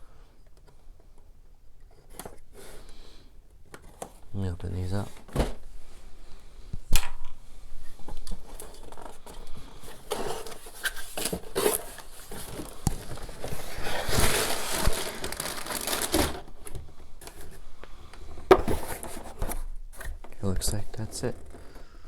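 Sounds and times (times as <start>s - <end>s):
plastic bags crinkling: 10.0s - 17.6s
plastic bricks rattling: 12.3s - 16.6s.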